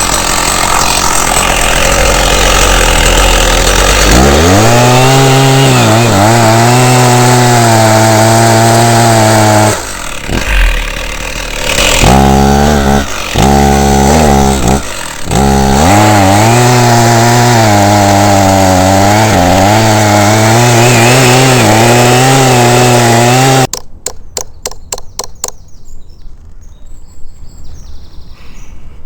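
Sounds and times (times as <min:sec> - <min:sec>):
chainsaw cutting wood: 0:00.0 - 0:25.5
sharp clicks: 0:23.7 - 0:25.6
faint bird chirps: 0:24.2 - 0:29.0.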